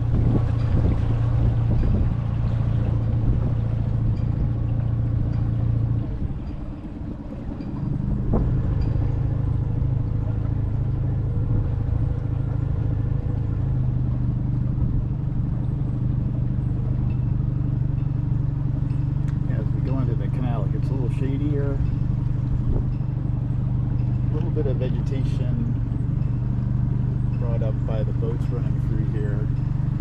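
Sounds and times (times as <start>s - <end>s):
outboard motor running: 0.0s - 30.0s.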